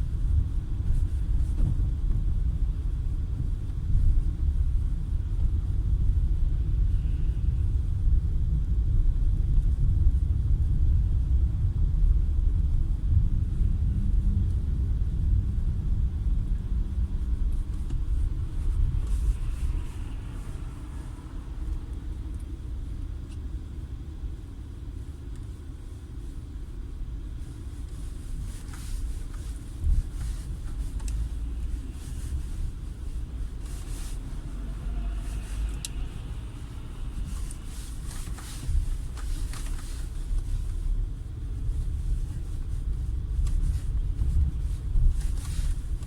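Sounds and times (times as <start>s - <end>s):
car engine low rumble: 0.0s - 46.0s.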